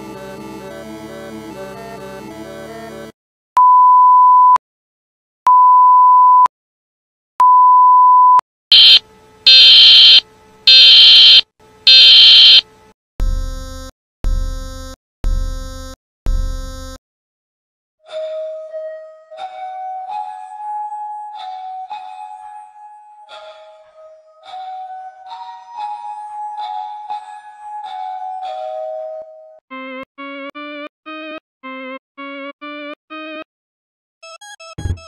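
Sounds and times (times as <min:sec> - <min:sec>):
music: 0:00.0 - 0:03.2, 0:13.2 - 0:17.0, 0:18.0 - 0:33.5
harsh rasping buzzes: 0:08.7 - 0:12.6
steady alarm beeps: 0:08.7 - 0:12.6.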